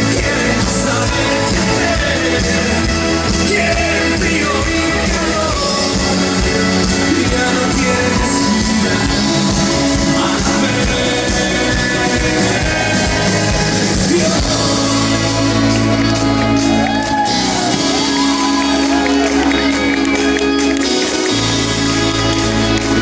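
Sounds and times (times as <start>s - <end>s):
live rock band playing: 0.0s - 23.0s
person singing: 0.0s - 23.0s
crowd shouting: 15.8s - 20.9s.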